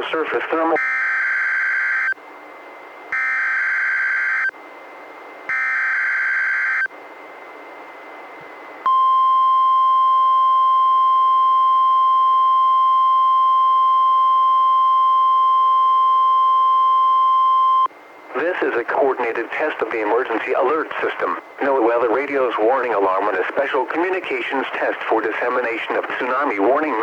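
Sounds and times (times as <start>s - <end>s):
steady warning alarm tone: 0.8s - 2.2s, 3.1s - 4.5s, 5.5s - 6.9s.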